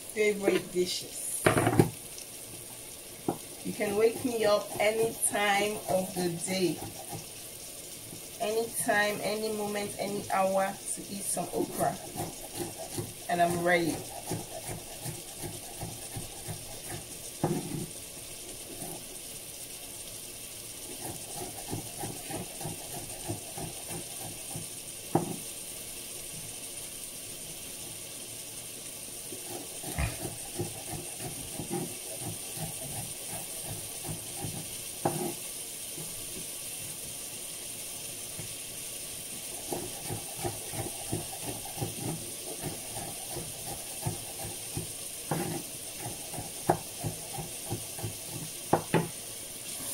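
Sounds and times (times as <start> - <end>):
vegetables sizzling in a pan: 0.0 - 49.9
utensil knocking against pan: 1.4 - 2.0.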